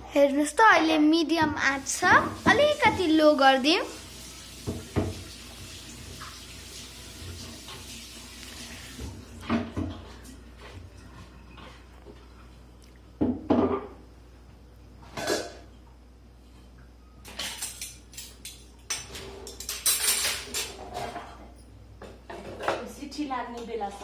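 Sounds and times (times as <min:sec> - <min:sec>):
dishes and utensils clattering: 0:15.1 - 0:15.7, 0:17.2 - 0:22.9.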